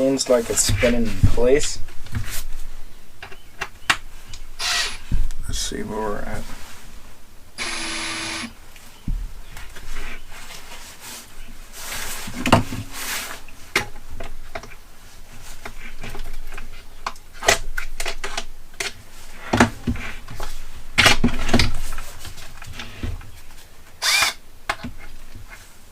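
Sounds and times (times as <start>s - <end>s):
small electric motor whirring: 4.6s - 5.0s, 7.6s - 8.5s, 24.0s - 24.4s.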